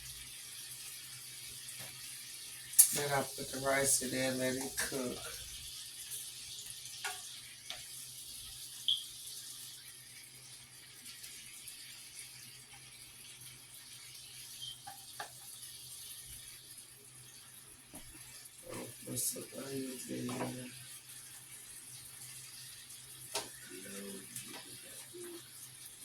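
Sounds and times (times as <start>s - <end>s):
shrimp sizzling in a frying pan: 0.0s - 26.0s.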